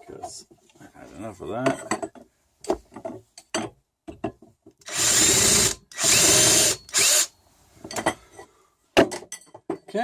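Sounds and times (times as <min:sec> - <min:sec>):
power drill whine: 0:04.9 - 0:07.4.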